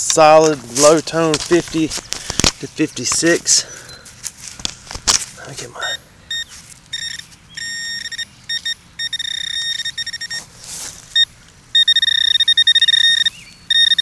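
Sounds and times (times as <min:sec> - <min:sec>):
metal detector beeping: 0:05.8 - 0:10.5, 0:11.1 - 0:14.0.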